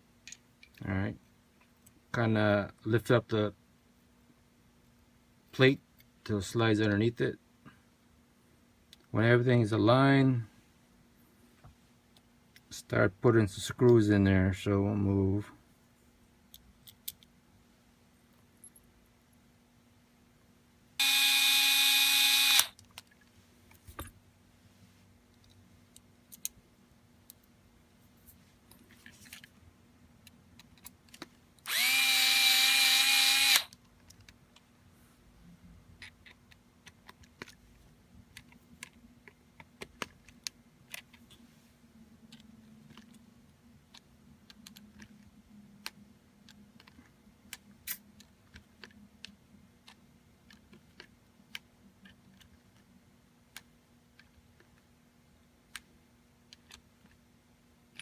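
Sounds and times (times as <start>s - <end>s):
electric screwdriver running: 21.0s - 22.7s, 31.7s - 33.7s
small parts clicking: 42.3s - 43.2s, 43.9s - 52.8s.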